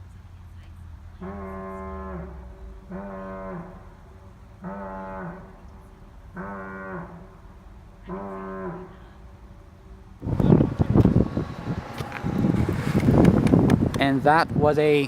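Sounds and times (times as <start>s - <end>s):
air horn blasts: 1.2s - 3.9s, 4.6s - 5.5s, 8.0s - 9.2s.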